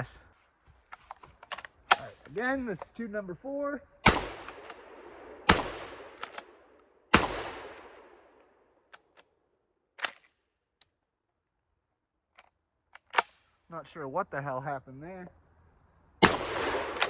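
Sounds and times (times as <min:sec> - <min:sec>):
metallic clicks from action: 0:00.9 - 0:02.8, 0:06.2 - 0:06.5, 0:10.0 - 0:11.0, 0:12.3 - 0:13.4
shotgun shots echoing: 0:04.0 - 0:08.4, 0:16.2 - 0:17.0.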